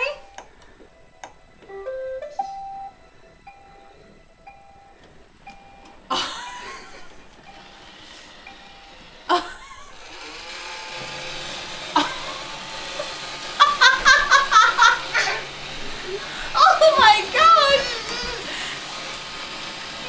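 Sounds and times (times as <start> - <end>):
vacuum motor and brushes humming: 0.0 - 20.0
robot vacuum beeping: 1.6 - 20.0
high-pitched voice: 16.5 - 18.5.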